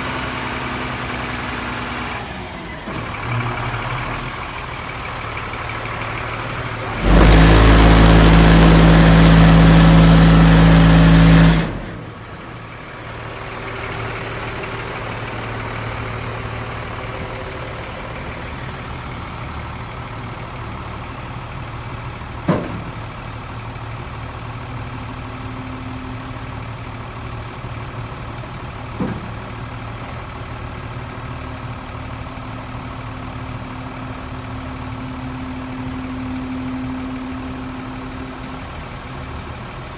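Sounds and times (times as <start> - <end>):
diesel engine idling: 0.0 - 39.9
loud horn blast: 7.0 - 11.8.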